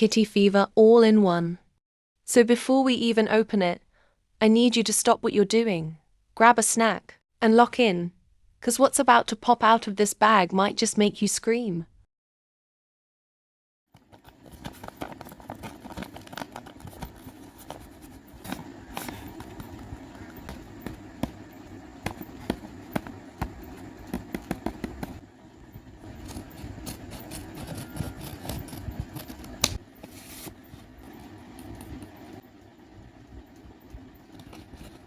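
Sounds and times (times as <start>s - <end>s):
plastic packaging crinkling: 14.0s - 25.2s.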